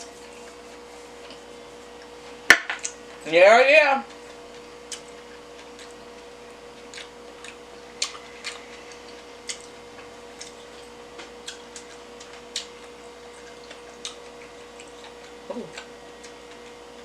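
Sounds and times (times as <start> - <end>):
faint hum: 0.0 - 17.0.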